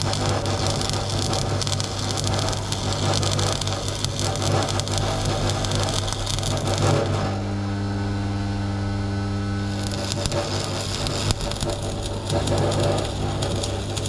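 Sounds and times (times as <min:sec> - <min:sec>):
welding arc crackling: 0:00.0 - 0:08.0, 0:08.8 - 0:14.0
steady low hum: 0:04.5 - 0:14.0.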